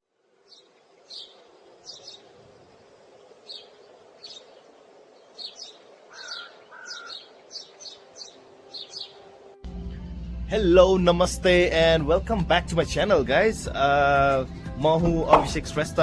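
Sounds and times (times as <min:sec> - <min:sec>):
small birds chirping: 0:00.4 - 0:09.5.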